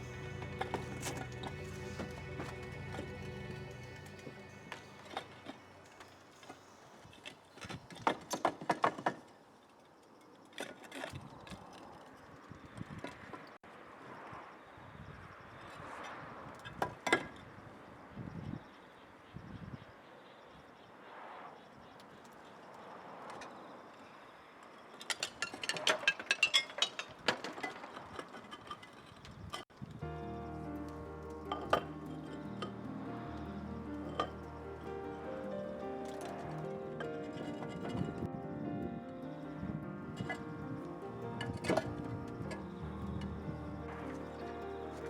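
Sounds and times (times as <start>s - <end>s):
clay roof tiles clacking: 0.0s - 13.6s, 24.9s - 38.4s, 39.3s - 45.0s.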